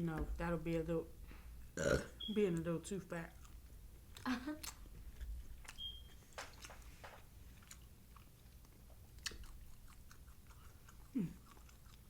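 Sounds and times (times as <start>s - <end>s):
person chewing with mouth clicks: 3.3s - 12.0s
person humming mm: 11.2s - 11.4s.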